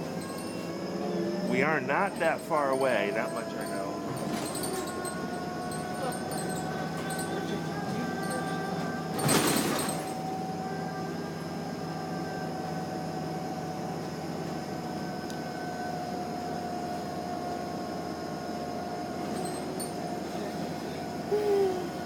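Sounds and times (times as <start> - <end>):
steady whine: 0.0 - 9.2
bus engine and road drone: 0.0 - 22.0.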